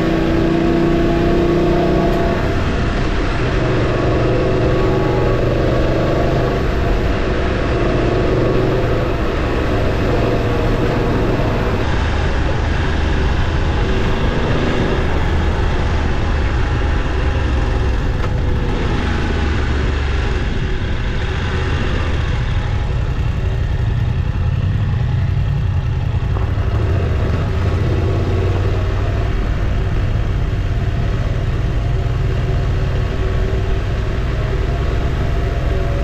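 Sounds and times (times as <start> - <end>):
motorcycle engine rumbling: 0.0 - 36.0.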